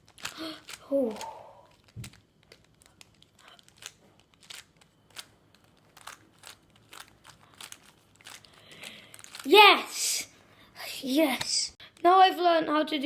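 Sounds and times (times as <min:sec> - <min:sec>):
rubik's cube plastic clicks: 0:00.0 - 0:09.5.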